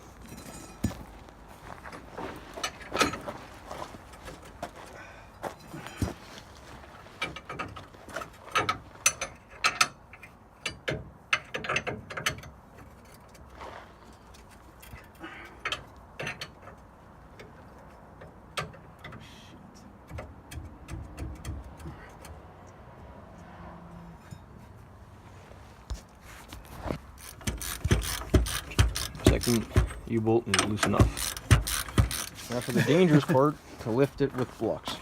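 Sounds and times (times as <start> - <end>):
metal knocks: 20.0 - 22.0, 27.3 - 32.4
hand ratchet clicking: 27.2 - 32.8.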